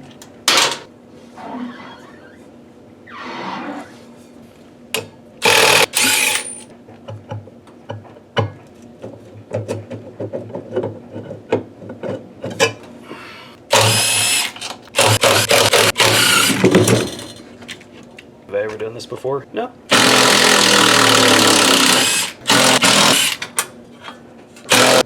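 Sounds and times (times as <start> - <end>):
power drill bursts: 5.4 - 6.5, 13.7 - 16.7, 19.9 - 23.4, 24.7 - 25.0.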